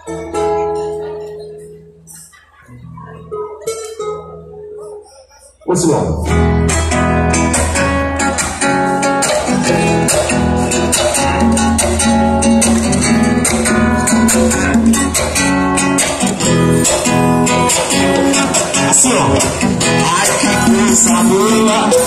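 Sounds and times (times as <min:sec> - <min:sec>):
strummed acoustic guitar: 0:00.0 - 0:22.0.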